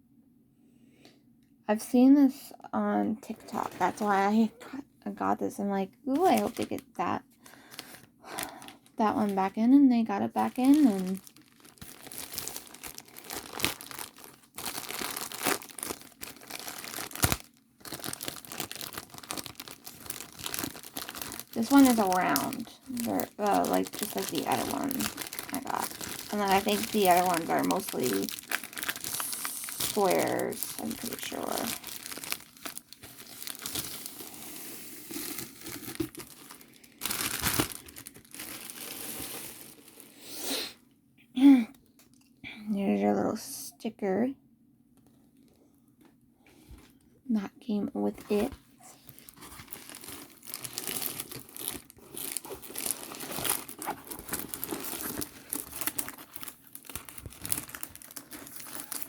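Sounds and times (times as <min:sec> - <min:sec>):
packaging crinkling and rustling: 0:03.4 - 0:04.5, 0:06.1 - 0:40.2, 0:48.2 - 0:59.0.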